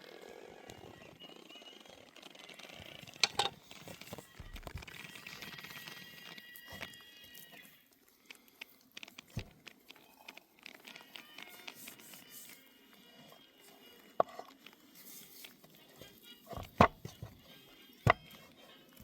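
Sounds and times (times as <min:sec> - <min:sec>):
fat crackling and popping: 0:01.9 - 0:19.0.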